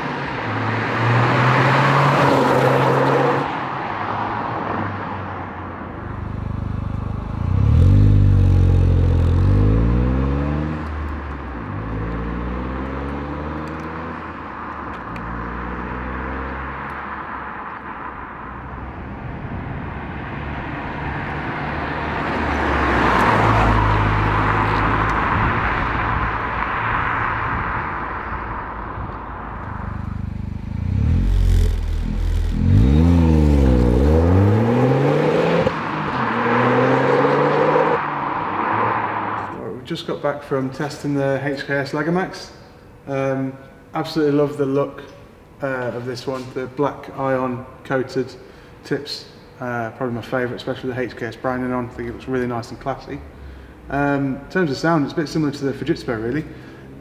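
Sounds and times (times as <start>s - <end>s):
car engine revving: 6.1s - 17.0s, 29.6s - 39.5s.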